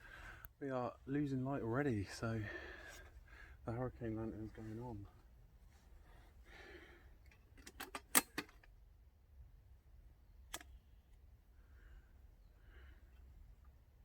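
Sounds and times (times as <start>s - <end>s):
metal lantern clicks and clinks: 7.6s - 8.7s.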